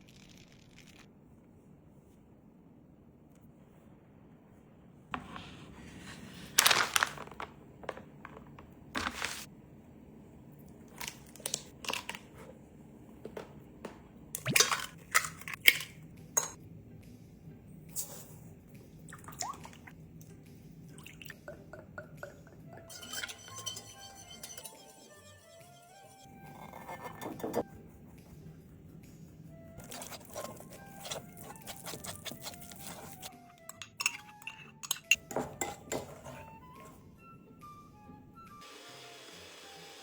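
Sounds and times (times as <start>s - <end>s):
food preparation crunches and squishes: 29.8s - 33.3s.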